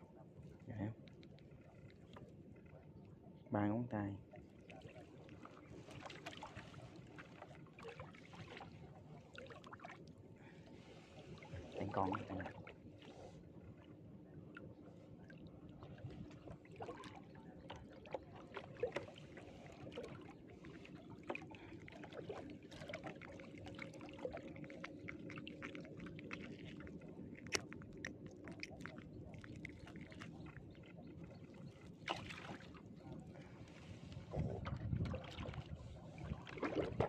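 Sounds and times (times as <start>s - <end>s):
faint steady hum: 0.0s - 37.0s
water dripping and splashing: 16.7s - 32.8s.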